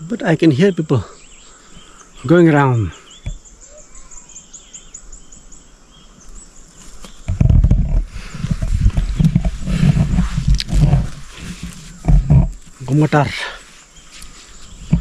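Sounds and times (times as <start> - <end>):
insects chirping: 0.0 - 15.0
low rumble with microphone crackles: 7.1 - 13.2, 14.6 - 15.0.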